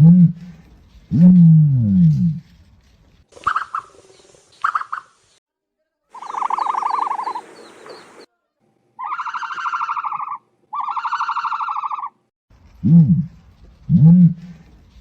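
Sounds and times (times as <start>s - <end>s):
bird calls: 3.3s - 5.4s, 6.1s - 8.3s
pulsing bird trill: 6.2s - 8.2s.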